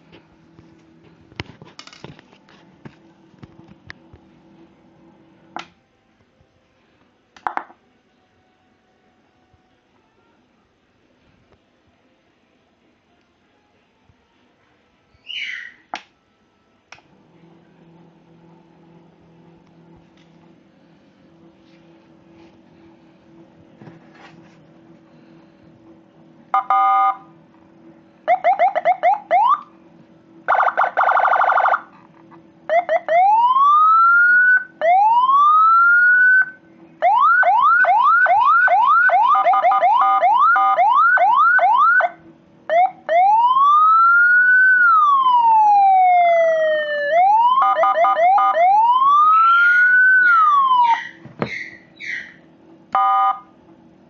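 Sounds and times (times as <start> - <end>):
low steady hum: 0.0 - 54.0
vehicle electronic siren: 26.5 - 27.3, 28.2 - 29.7, 30.5 - 31.9, 32.7 - 52.2, 53.0 - 53.5.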